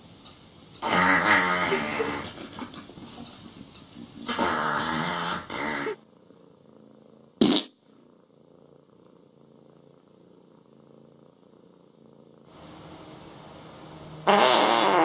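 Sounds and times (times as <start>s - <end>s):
cat calling: 0.8s - 2.4s, 4.3s - 6.0s, 14.2s - 15.0s.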